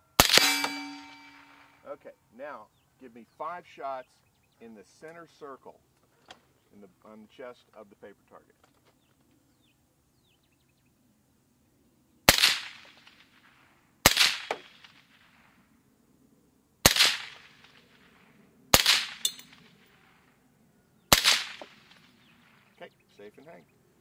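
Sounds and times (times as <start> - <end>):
rifle shots with echo: 0.2 - 1.8, 12.3 - 15.6, 16.8 - 20.3, 21.1 - 22.7.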